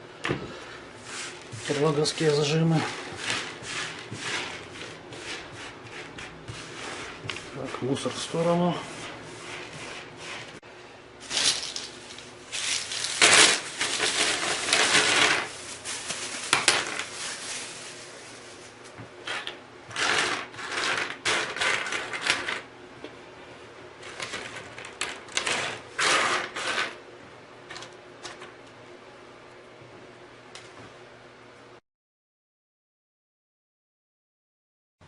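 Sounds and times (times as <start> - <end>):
scratchy rubbing and rustling: 1.0 - 10.6, 11.2 - 22.6, 24.0 - 27.0.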